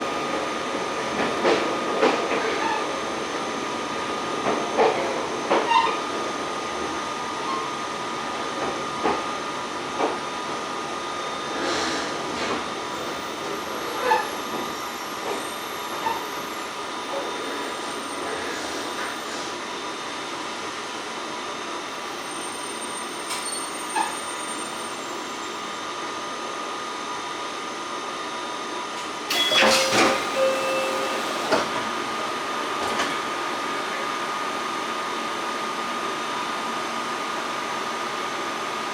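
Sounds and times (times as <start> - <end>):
train running noise: 0.0 - 19.7, 29.0 - 34.0
faint high tone: 29.3 - 31.2.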